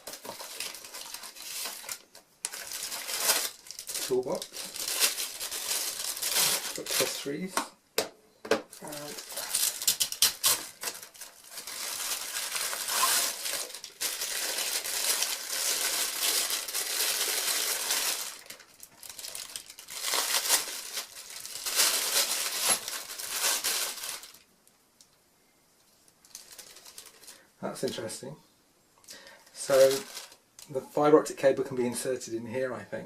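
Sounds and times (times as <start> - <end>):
plastic packaging crinkling: 0.0 - 7.6, 8.6 - 24.5, 26.2 - 27.5, 29.5 - 30.6.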